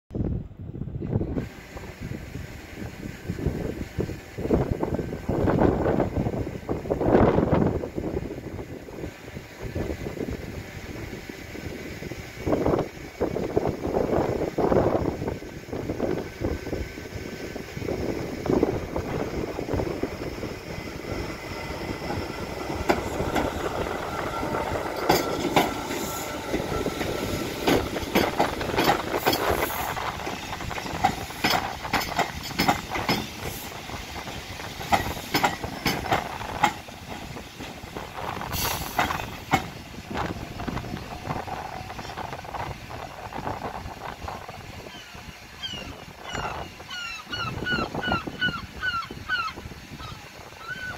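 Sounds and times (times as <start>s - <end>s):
train whine: 0.2s - 50.9s
train wheels clicking over rail joints: 9.1s - 44.8s.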